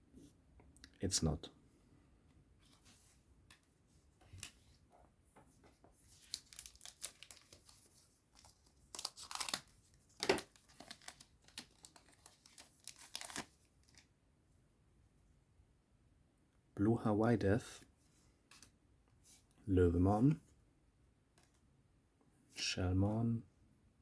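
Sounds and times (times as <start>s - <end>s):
wrapper tearing and crinkling: 6.2s - 14.0s.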